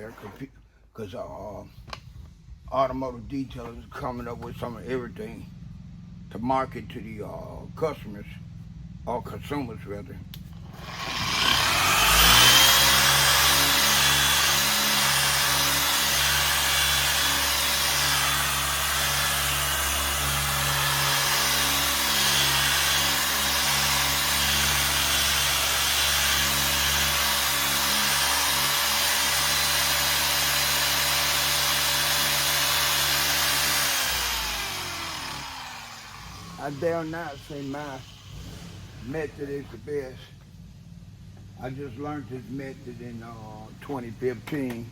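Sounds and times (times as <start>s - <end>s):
electric polisher running: 10.6s - 38.7s.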